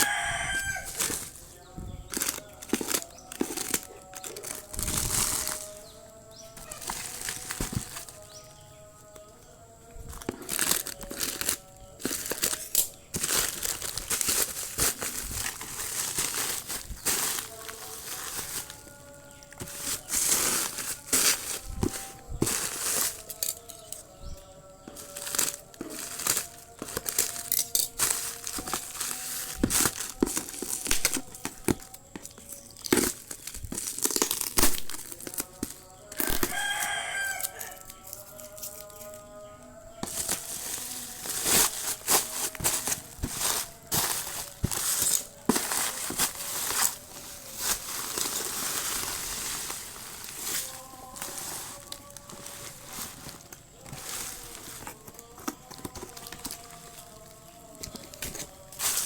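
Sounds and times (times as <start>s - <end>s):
rooster crowing: 0.0s - 1.4s, 36.2s - 38.2s
plastic packaging crinkling: 0.0s - 39.2s, 40.0s - 59.0s.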